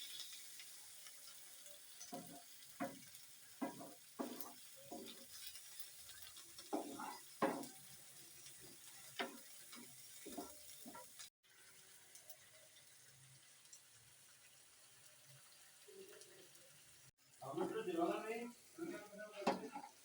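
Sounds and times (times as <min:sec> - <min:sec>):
faint sizzle: 0:00.0 - 0:20.0
spoon scraping a frying pan: 0:02.0 - 0:11.2.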